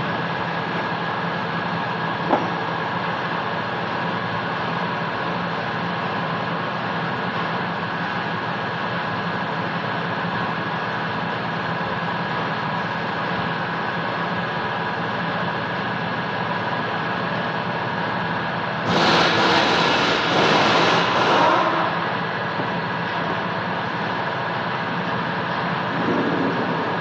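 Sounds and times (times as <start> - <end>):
mechanical hum with tones: 0.0 - 27.0.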